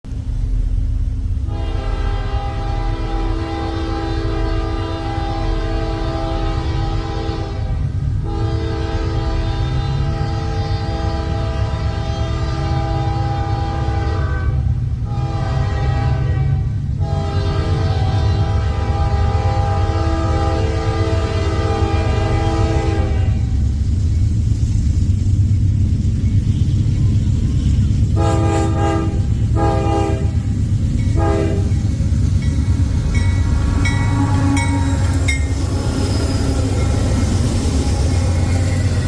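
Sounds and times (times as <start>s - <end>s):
low rumble of train: 0.0s - 39.0s
locomotive air horn chord: 1.4s - 23.6s, 28.2s - 30.5s, 31.1s - 31.8s, 33.1s - 38.4s.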